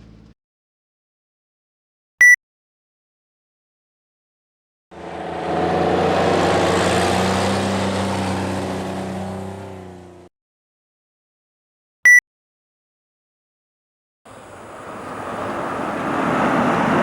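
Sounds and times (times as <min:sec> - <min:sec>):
truck driving past: 0:05.0 - 0:10.3, 0:14.3 - 0:17.0.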